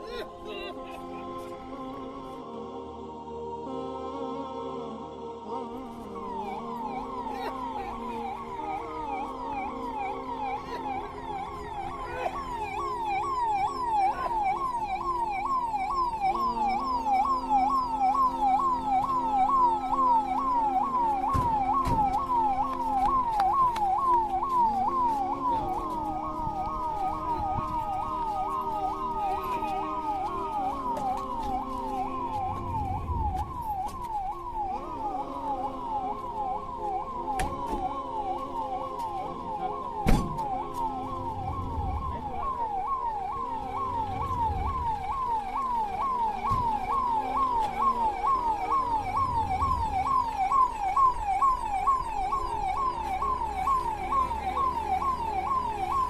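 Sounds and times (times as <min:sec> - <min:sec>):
police siren yelping: 0:05.9 - 0:56.0.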